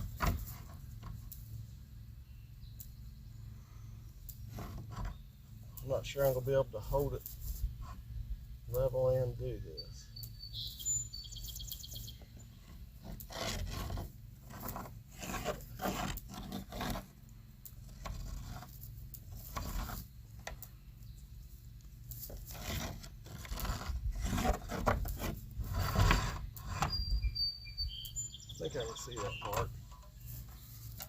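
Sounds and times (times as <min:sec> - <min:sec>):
rubbing and scraping on wood: 0:00.0 - 0:01.5, 0:04.4 - 0:05.2, 0:05.8 - 0:08.1, 0:11.9 - 0:27.2, 0:28.6 - 0:31.0.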